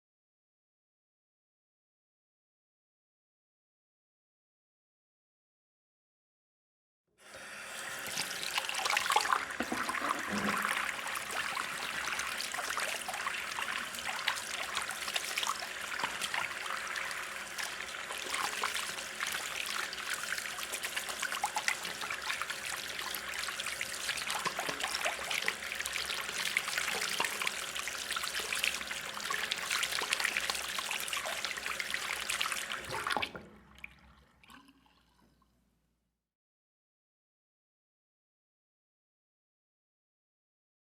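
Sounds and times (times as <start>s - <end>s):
running water trickle: 7.9s - 35.4s.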